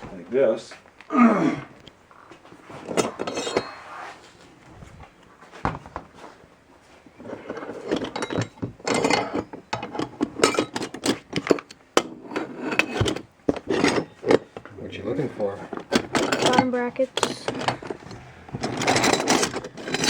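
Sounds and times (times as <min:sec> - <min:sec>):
metal hardware clinking and clattering: 0:02.7 - 0:03.8, 0:07.2 - 0:20.0.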